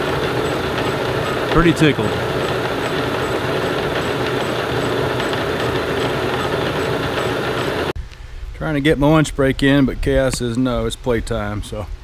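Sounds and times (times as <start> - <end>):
boring mill running: 0.0 - 8.0.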